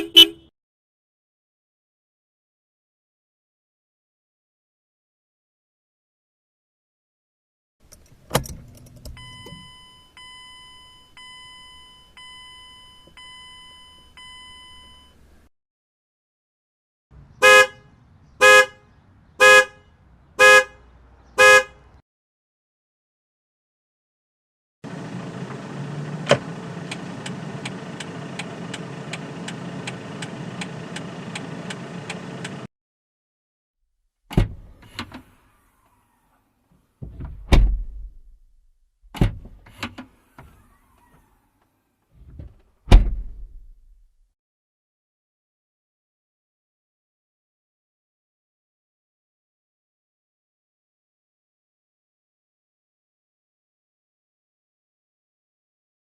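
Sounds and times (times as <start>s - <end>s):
car horn honking: 0.0s - 0.5s, 17.4s - 20.8s, 21.4s - 22.0s
car door shutting with latch click: 7.9s - 9.7s, 26.2s - 28.5s, 34.3s - 35.3s, 39.1s - 40.7s, 42.3s - 43.7s.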